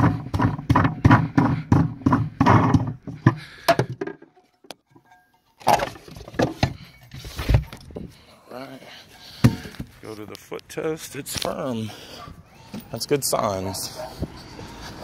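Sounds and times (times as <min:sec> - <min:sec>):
thumps: 0:00.0 - 0:08.2, 0:09.4 - 0:10.0.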